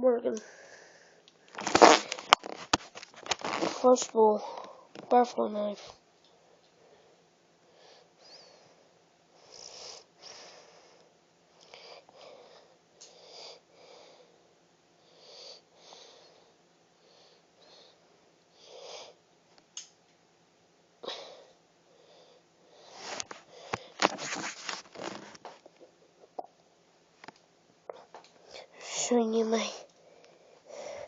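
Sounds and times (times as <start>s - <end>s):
soft slow breathing: 0.4s - 1.6s, 5.8s - 19.2s, 21.1s - 26.0s, 29.6s - 31.0s.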